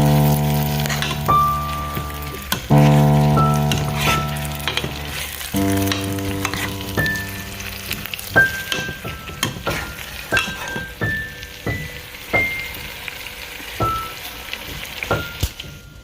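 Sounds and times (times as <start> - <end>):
background music with chords: 0.0 - 9.1
food sizzling in oily pan: 0.0 - 16.0
utensil scraping pan: 6.0 - 7.0.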